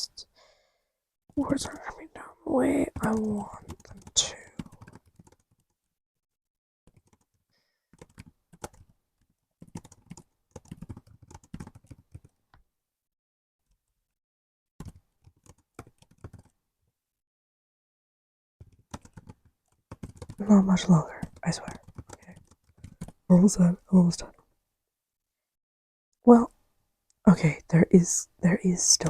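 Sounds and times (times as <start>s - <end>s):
typing on laptop keyboard: 2.6s - 5.8s, 6.9s - 12.6s, 14.8s - 16.6s, 18.6s - 23.3s.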